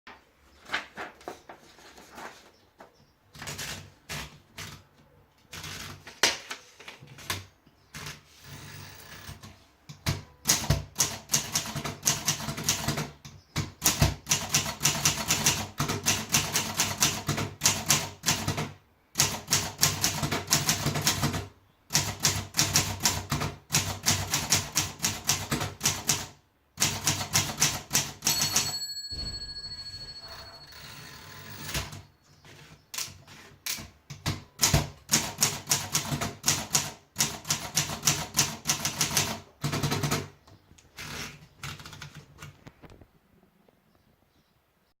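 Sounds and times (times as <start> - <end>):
typewriter keystrokes: 9.2 - 28.7, 33.0 - 40.4
typewriter bell ringing: 28.0 - 32.1.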